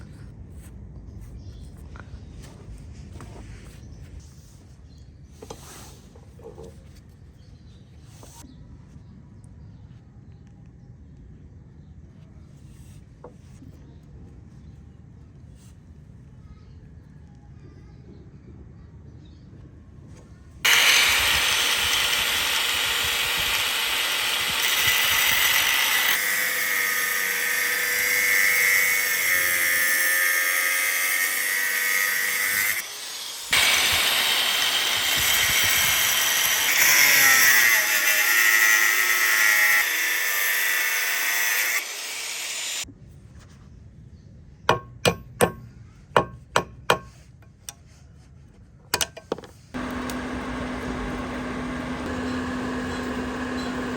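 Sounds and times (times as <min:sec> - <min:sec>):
power grinder on steel: 0:20.7 - 0:42.8, 0:49.8 - 0:53.9.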